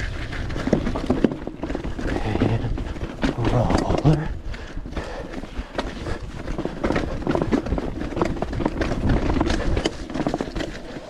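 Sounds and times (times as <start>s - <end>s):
wind rumbling on microphone: 0.0s - 10.7s
bike chain and frame rattling: 0.0s - 11.0s
bike tyres crunching on rock: 0.0s - 11.0s.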